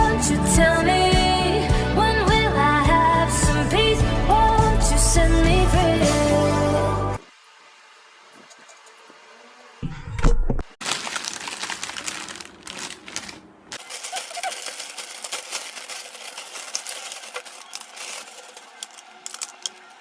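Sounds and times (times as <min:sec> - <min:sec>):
packaging crackling and rustling: 0:10.8 - 0:20.0.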